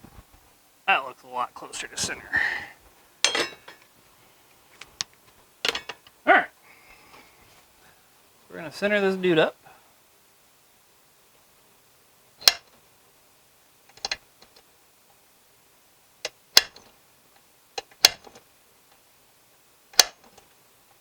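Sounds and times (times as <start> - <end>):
hammer tapping metal punch: 3.2 - 3.8.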